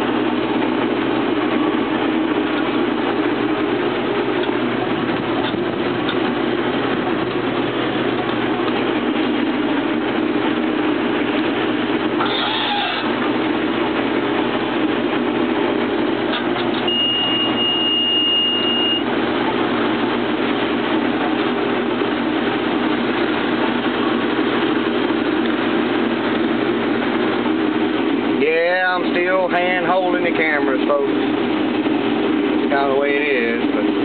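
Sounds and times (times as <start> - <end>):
combine harvester machine drone: 0.0 - 34.0
thin high beep tone: 16.8 - 19.0.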